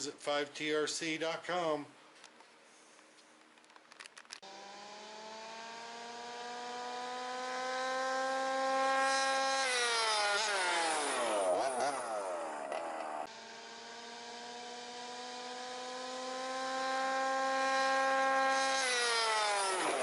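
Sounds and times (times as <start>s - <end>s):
small two-stroke engine revving: 4.4s - 20.0s.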